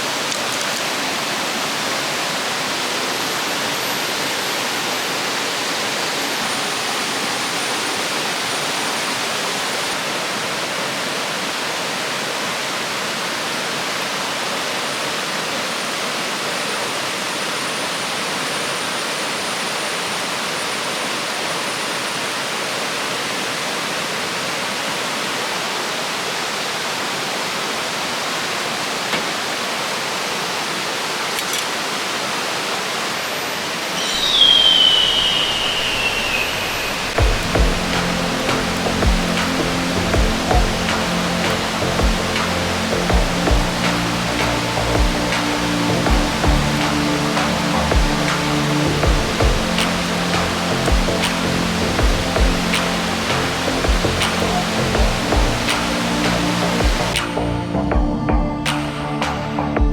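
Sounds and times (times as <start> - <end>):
river water rushing: 0.0 - 57.4.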